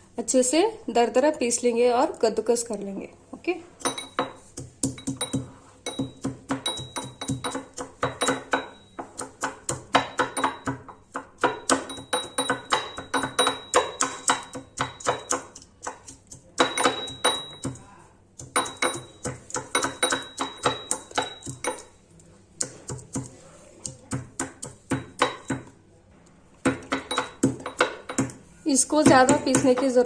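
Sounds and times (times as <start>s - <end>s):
pestle pounding spices in mortar: 3.8s - 22.0s, 22.6s - 25.8s, 26.6s - 29.9s.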